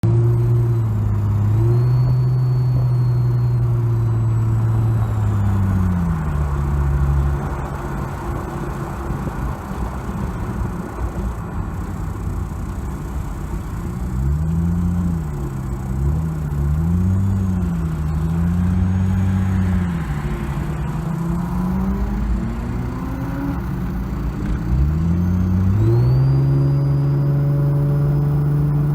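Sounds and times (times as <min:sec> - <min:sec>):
car engine running with wheeze: 0:00.0 - 0:28.9.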